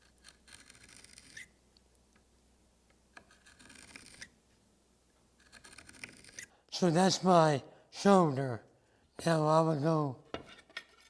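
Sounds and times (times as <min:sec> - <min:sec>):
knife scratching wood: 0:00.0 - 0:01.5, 0:03.1 - 0:04.4, 0:05.4 - 0:06.5.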